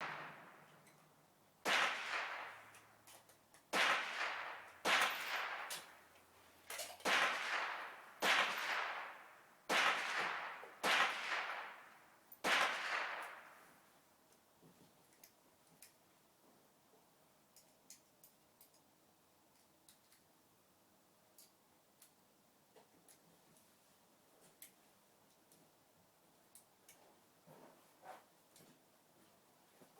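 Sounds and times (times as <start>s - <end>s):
rifle shots echoing: 0.0s - 0.8s, 1.6s - 2.8s, 3.7s - 6.0s, 7.0s - 13.7s.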